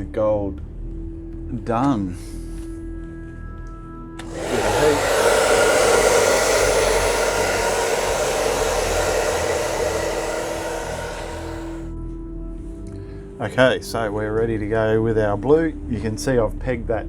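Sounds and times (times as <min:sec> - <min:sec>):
rush of blown air: 0:04.2 - 0:11.9.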